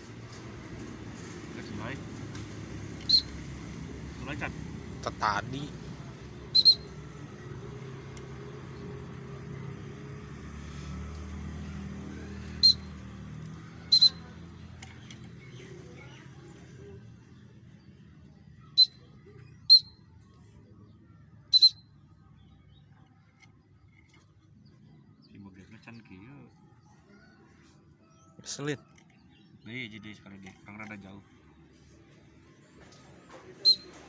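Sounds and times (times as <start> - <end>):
raptor chirping: 3.0 - 3.5, 6.5 - 7.0, 12.6 - 13.0, 13.8 - 14.3, 18.8 - 19.0, 19.6 - 20.0, 21.5 - 21.8, 33.6 - 33.9.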